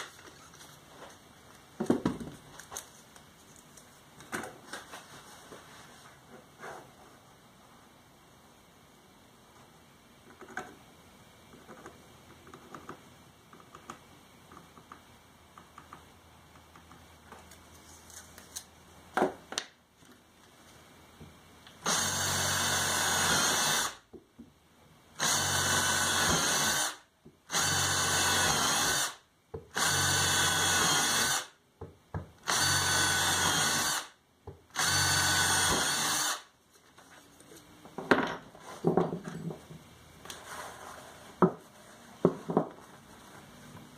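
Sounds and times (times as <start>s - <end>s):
electric drill bursts: 21.8s - 24.0s, 25.2s - 31.6s, 32.4s - 36.5s.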